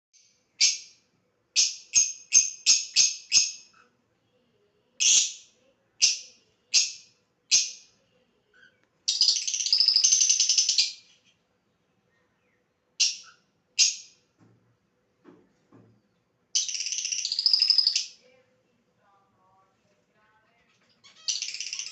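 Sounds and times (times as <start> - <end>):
bird chirping shrilly: 9.1 - 11.3, 16.6 - 18.2, 21.1 - 21.9.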